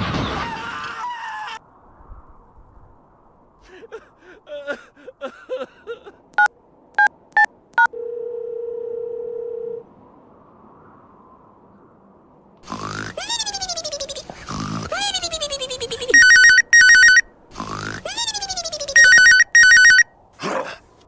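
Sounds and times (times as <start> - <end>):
steady dial tone: 16.2 - 17.2, 19.0 - 20.0
telephone keypad beeps: 16.2 - 17.2, 19.0 - 20.0.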